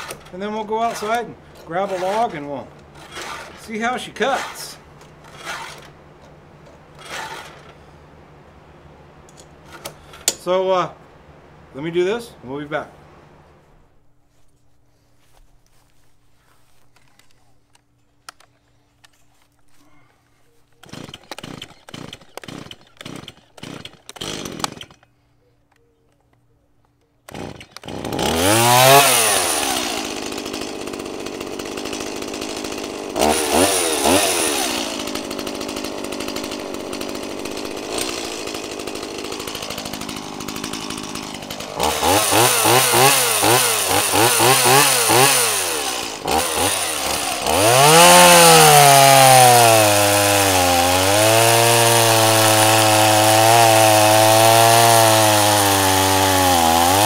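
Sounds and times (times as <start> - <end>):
chainsaw revving and cutting log: 0.0 - 6.0, 7.0 - 7.8, 20.8 - 25.0, 27.3 - 57.0.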